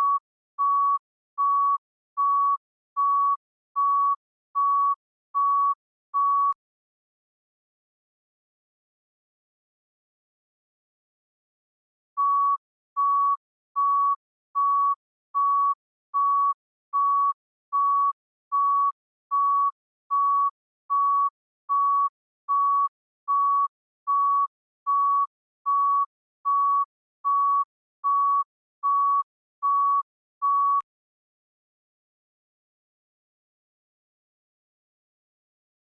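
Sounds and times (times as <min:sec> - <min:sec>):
heart rate monitor beeping: 0:00.0 - 0:06.6, 0:12.2 - 0:30.9.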